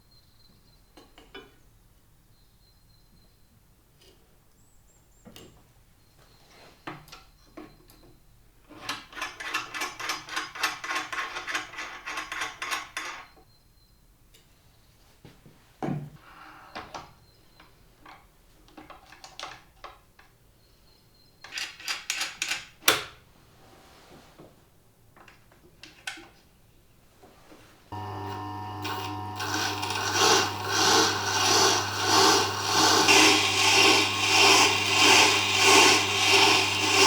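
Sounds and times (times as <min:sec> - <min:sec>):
rhythmic scraping strokes: 0:28.0 - 0:37.0.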